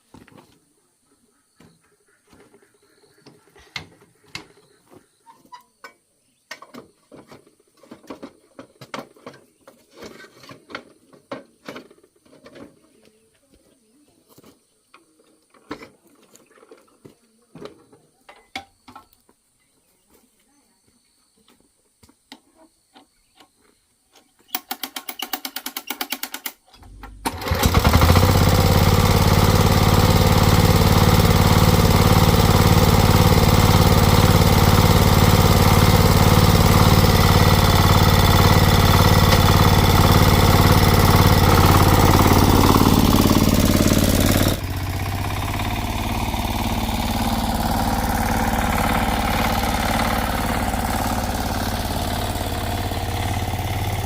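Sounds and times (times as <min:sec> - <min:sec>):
small engine starting and running: 0:24.6 - 0:54.0.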